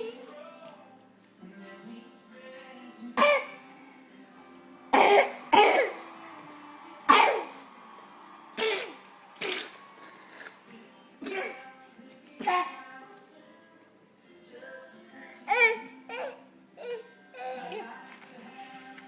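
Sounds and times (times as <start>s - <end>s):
faint background music: 0.0s - 19.0s
person coughing: 5.0s - 6.0s.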